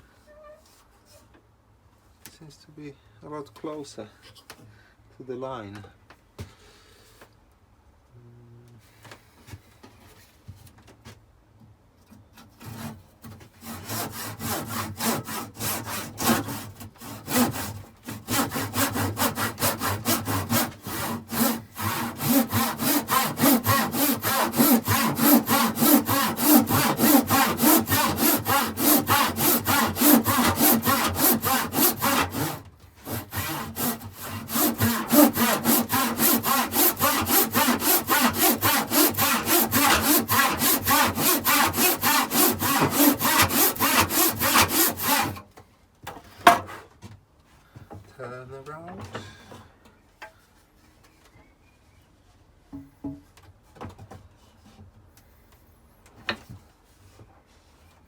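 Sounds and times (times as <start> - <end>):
handsaw cutting timber: 12.6 - 13.0, 13.6 - 45.4.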